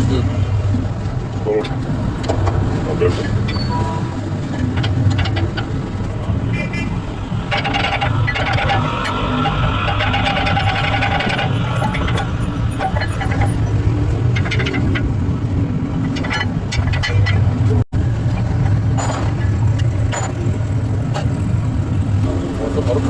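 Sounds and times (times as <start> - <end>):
car engine humming: 0.0 - 23.0.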